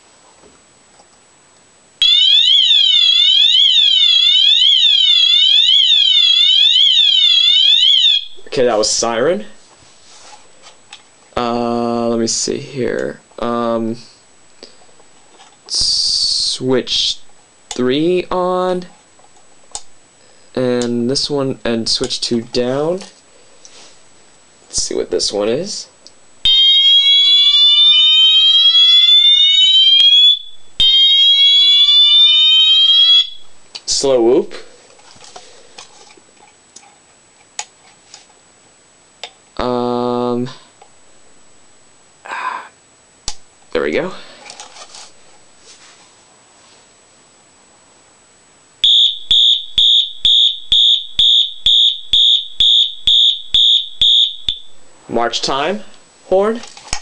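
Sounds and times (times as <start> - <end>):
fire alarm whoop tone: 2.0 - 8.5, 26.4 - 33.5, 48.8 - 54.8.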